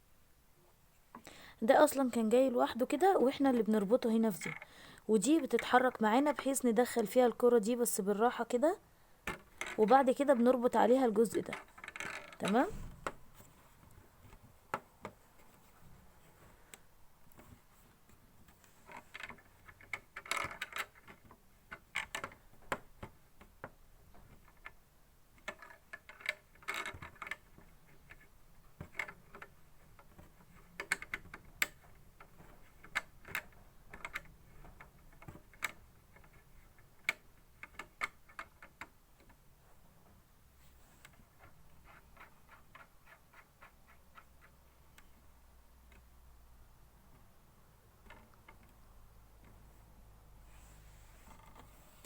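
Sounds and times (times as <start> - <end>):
plastic and metal parts clicking: 4.4 - 4.7, 9.2 - 10.0, 11.4 - 13.2, 18.6 - 39.4, 48.0 - 48.8.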